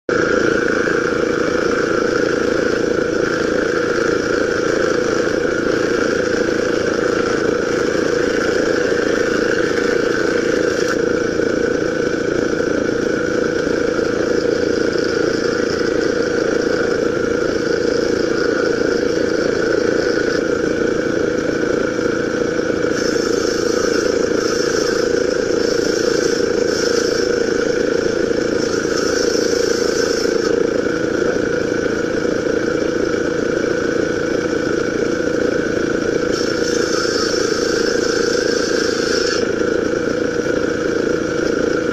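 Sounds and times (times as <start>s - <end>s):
planer machine running: 0.1s - 41.9s
high hiss: 22.9s - 30.6s, 36.3s - 39.6s.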